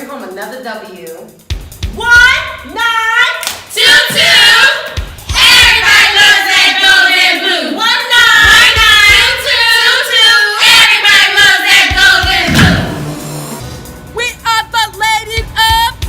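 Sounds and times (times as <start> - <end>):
group singing in unison: 3.8 - 13.9
low thumps: 11.7 - 16.0.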